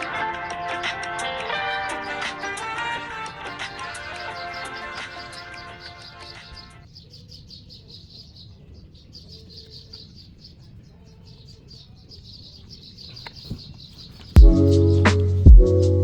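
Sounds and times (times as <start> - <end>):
rapid high-pitched chirping: 0.0 - 10.7
loud music with bass hit: 14.4 - 16.0.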